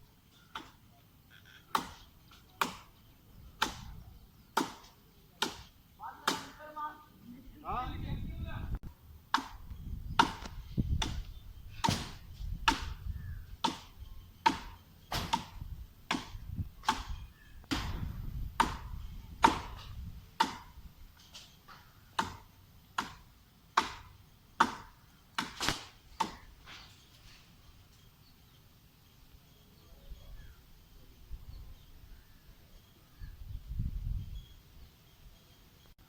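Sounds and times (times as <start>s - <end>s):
blade chopping palm trunk: 11.8s - 13.0s, 13.6s - 18.0s, 18.6s - 19.8s, 20.4s - 20.7s, 23.8s - 26.5s.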